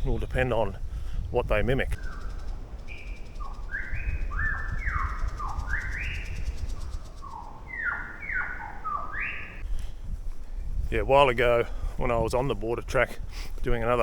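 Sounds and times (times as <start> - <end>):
bird singing whistled notes: 1.8 - 9.6.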